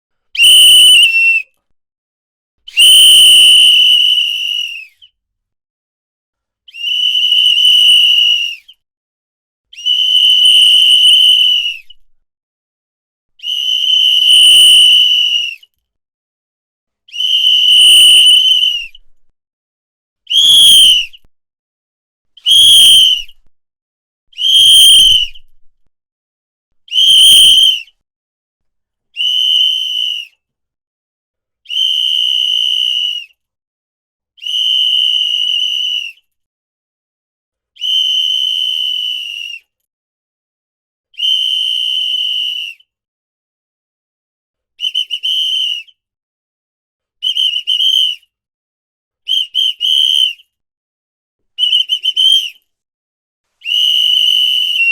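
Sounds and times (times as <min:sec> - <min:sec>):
whistle blasts: 0:00.4 - 0:01.5, 0:02.7 - 0:05.0, 0:09.8 - 0:12.0, 0:13.4 - 0:15.5, 0:20.3 - 0:21.2, 0:22.4 - 0:23.4, 0:24.4 - 0:25.5, 0:26.9 - 0:27.9, 0:29.2 - 0:30.4, 0:37.8 - 0:39.6, 0:41.2 - 0:42.8, 0:44.8 - 0:45.9, 0:47.2 - 0:48.2, 0:49.3 - 0:50.4, 0:51.6 - 0:52.6, 0:53.6 - 0:54.9.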